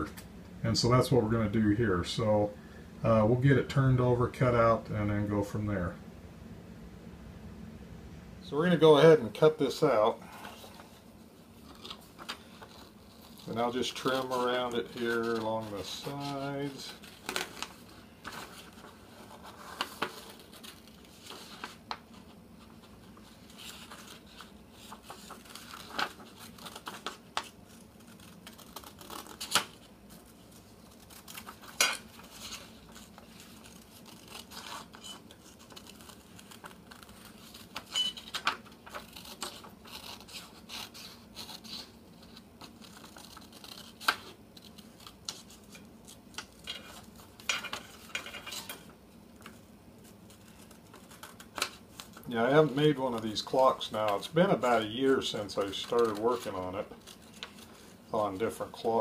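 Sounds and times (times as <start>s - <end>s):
paper rustling: 11.6s - 59.0s
scissors snipping paper: 30.9s - 37.9s, 38.9s - 47.9s, 55.4s - 57.9s.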